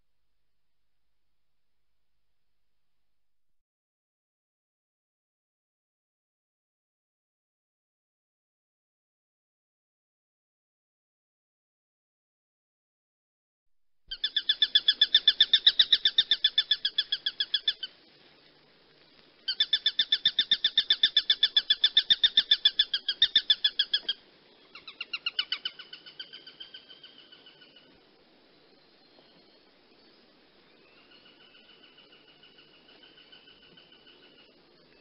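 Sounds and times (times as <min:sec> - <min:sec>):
hawk chattering call: 0:14.1 - 0:17.9, 0:19.5 - 0:27.8.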